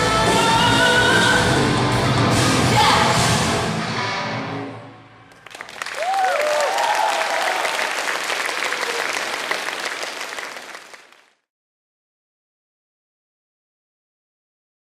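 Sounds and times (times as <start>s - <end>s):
audience applauding: 5.3s - 11.4s
crowd cheering and whooping: 5.7s - 9.9s.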